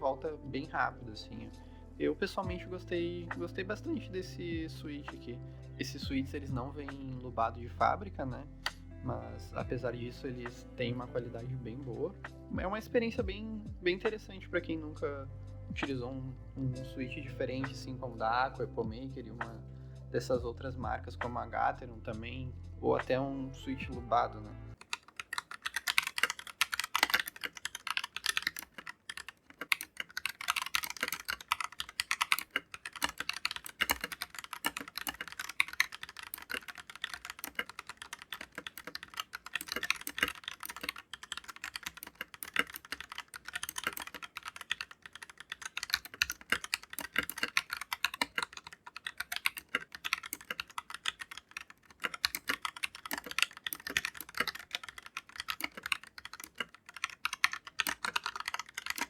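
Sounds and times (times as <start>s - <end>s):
mechanical keyboard typing: 2.4s - 7.6s, 24.7s - 59.0s.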